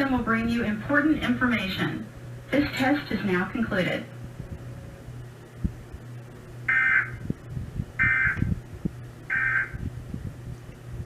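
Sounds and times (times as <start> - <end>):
buzzy digital data bursts: 6.7 - 7.2, 8.0 - 8.6, 9.3 - 9.8.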